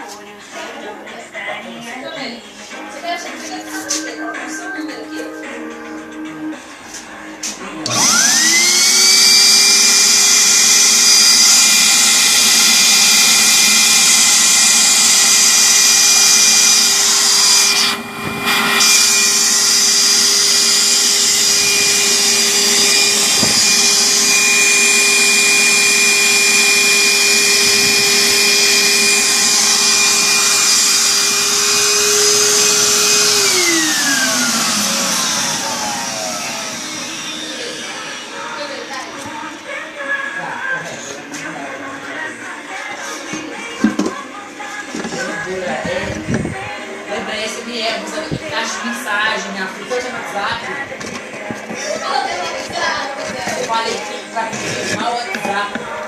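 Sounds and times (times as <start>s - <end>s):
vacuum motor whining: 7.6s - 41.6s, 44.8s - 56.0s.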